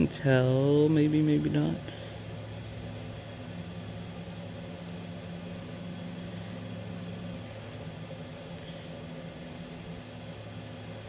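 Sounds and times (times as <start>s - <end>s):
low machinery hum: 0.0s - 11.0s.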